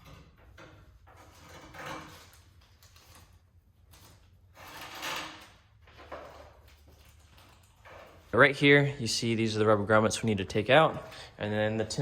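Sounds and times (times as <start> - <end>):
objects scraping and rustling: 0.0 - 8.4.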